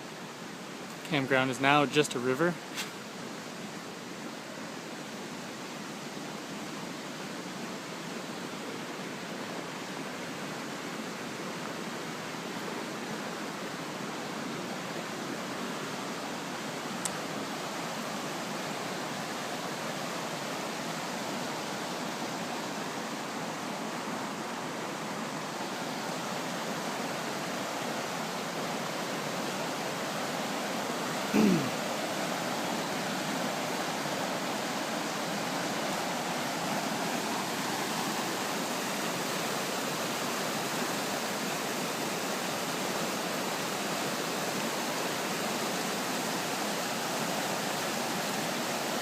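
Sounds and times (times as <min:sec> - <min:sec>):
river water rushing: 0:00.0 - 0:49.0
faint click: 0:17.0 - 0:17.2.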